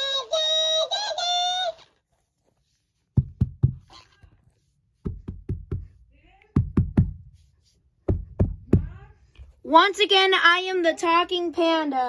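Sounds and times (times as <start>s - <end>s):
toy sped-up voice singing: 0.0s - 1.8s
sharp knocks and taps: 3.2s - 3.9s, 5.0s - 7.2s.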